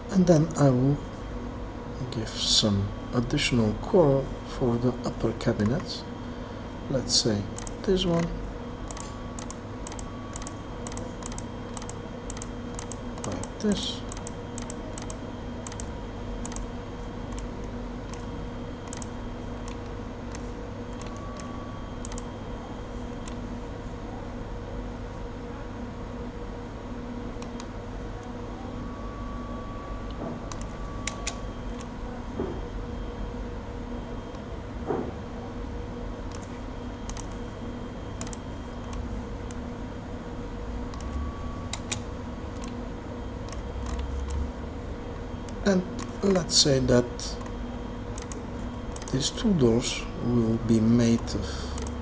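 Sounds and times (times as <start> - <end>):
low electrical hum: 0.0 - 52.0
mouse and keyboard clicks: 8.9 - 13.5, 14.1 - 16.6, 30.5 - 31.9, 37.1 - 37.4, 43.5 - 44.4, 48.2 - 49.2.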